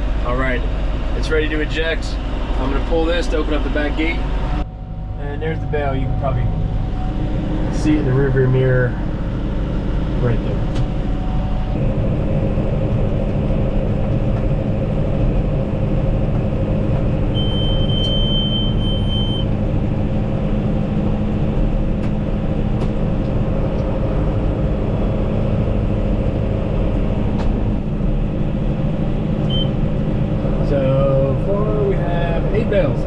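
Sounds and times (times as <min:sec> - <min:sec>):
tractor diesel engine running: 0:00.0 - 0:33.0
high beep: 0:17.3 - 0:19.5, 0:29.5 - 0:29.8.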